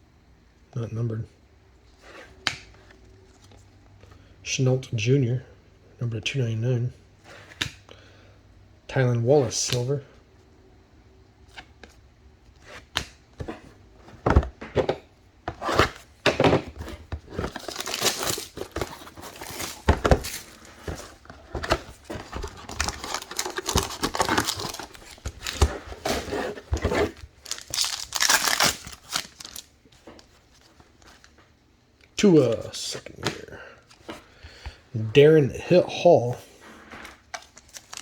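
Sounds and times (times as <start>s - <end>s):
wrappers crinkling and tearing: 17.3s - 21.2s, 21.8s - 29.7s, 37.4s - 38.0s.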